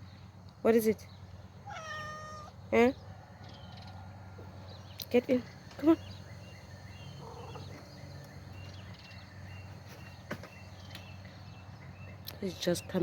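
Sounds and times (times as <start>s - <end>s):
faint bird chirps: 2.4s - 12.3s.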